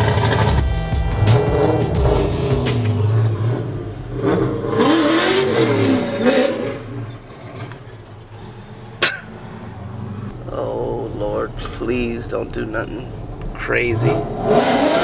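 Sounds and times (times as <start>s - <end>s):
vehicle engine revving: 0.0s - 15.0s.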